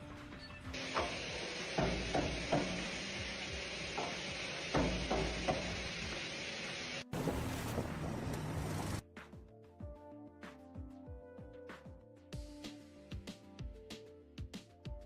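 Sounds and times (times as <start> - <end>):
sharp knocks: 0.9 - 3.0, 4.0 - 5.9.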